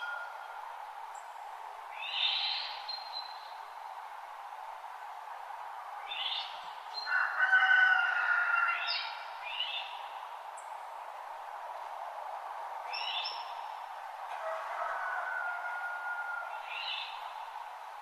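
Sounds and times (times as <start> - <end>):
steady background hiss: 0.0 - 18.0
songbirds calling: 2.0 - 3.6, 16.0 - 17.8.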